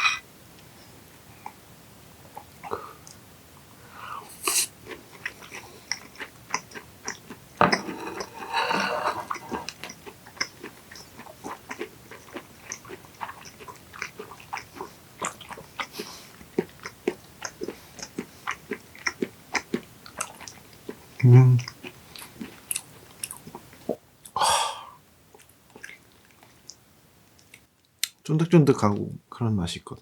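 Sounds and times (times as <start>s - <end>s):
chewing raw fish: 4.5s - 24.4s, 25.3s - 26.8s
knock: 7.6s - 8.0s.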